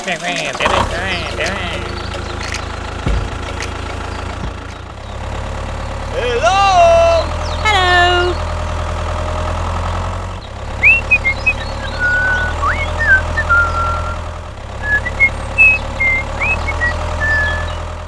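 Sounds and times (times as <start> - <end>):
tractor engine idling: 0.0 - 18.0
high chirps and whistles: 10.7 - 17.9.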